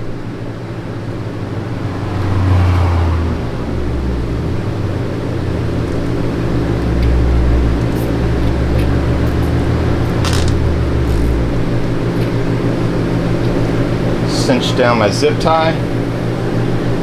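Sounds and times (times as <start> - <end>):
low machinery hum: 0.0 - 17.0
deep rumble: 1.0 - 14.5.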